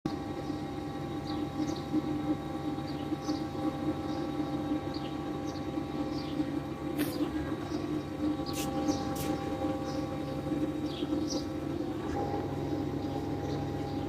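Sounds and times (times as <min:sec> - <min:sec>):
machine hum: 0:00.1 - 0:14.0.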